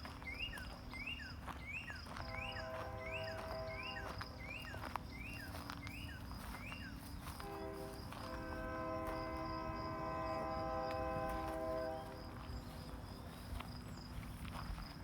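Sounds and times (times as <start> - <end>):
distant train horn: 2.0 - 4.8, 7.3 - 12.9
high insect buzz: 7.5 - 12.5.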